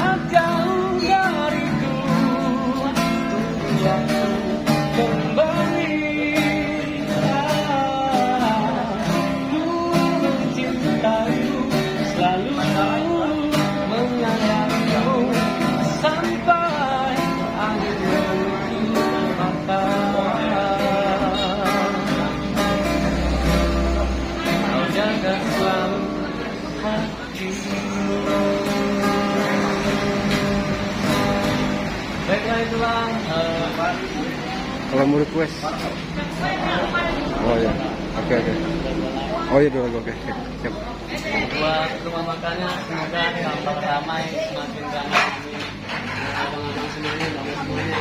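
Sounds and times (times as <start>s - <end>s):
man singing: 0.0s - 31.2s, 32.0s - 39.0s
acoustic guitar strumming: 0.0s - 48.0s.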